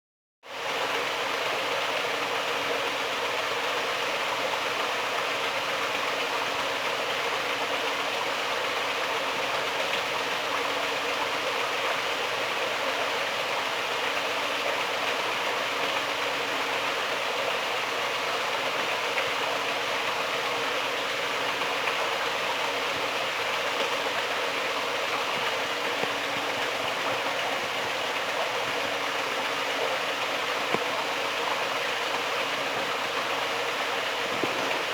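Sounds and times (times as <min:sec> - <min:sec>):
aerator churning and splashing water: 0:22.8 - 0:34.9.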